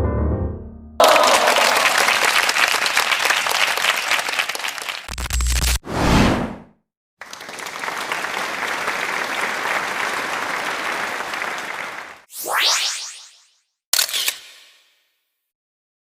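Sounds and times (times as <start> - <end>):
crowd applauding: 1.0 - 5.3, 7.2 - 12.3.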